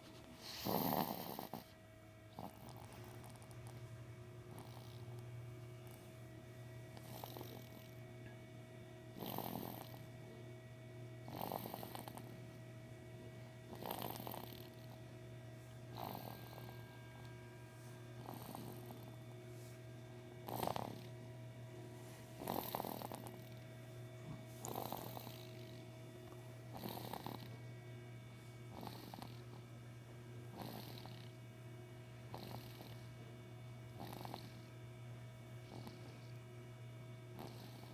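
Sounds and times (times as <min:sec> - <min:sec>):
steady low hum: 0:00.0 - 0:37.9
rough rasping snoring: 0:00.4 - 0:01.7, 0:02.3 - 0:03.4, 0:04.5 - 0:05.0, 0:07.0 - 0:07.9, 0:09.2 - 0:10.0, 0:11.3 - 0:12.3, 0:13.7 - 0:14.9, 0:15.9 - 0:16.8, 0:18.2 - 0:19.1, 0:20.4 - 0:21.1, 0:22.4 - 0:23.5, 0:24.6 - 0:25.8, 0:26.7 - 0:27.6, 0:28.7 - 0:29.5, 0:30.5 - 0:31.3, 0:32.3 - 0:33.0, 0:34.0 - 0:34.7, 0:35.6 - 0:36.3, 0:37.4 - 0:37.9.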